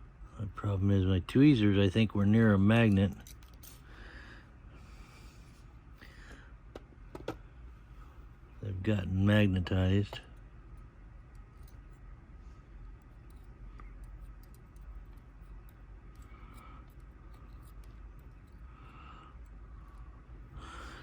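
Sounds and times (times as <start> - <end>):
low steady hum: 0.0 - 21.0
tweezers and lock pins clicking: 2.9 - 3.8, 13.0 - 20.1.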